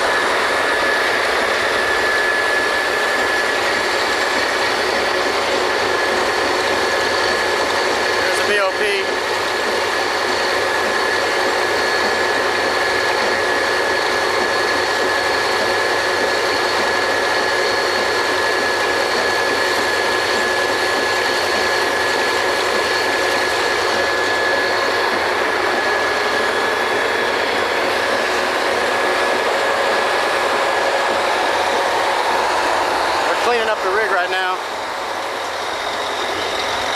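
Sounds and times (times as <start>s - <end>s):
drilling rig machinery din: 0.0s - 36.9s
high whine: 0.0s - 36.9s.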